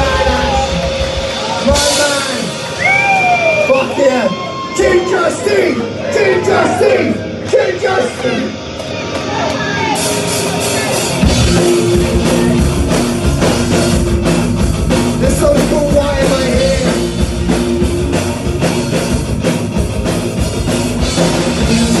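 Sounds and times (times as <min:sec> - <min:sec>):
drum kit played hard: 0:00.0 - 0:04.0, 0:10.0 - 0:22.0.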